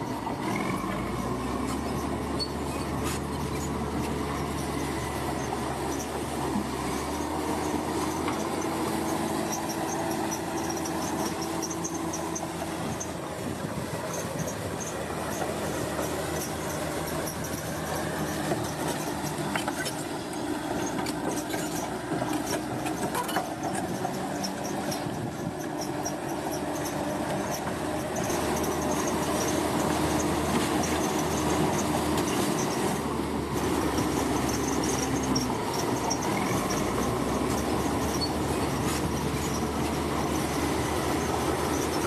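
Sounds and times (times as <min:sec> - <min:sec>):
diesel engine running: 0:00.0 - 0:42.0
steel tracks squeaking and clanking: 0:00.0 - 0:42.0
small high squeaks: 0:00.5 - 0:13.2, 0:33.8 - 0:42.0.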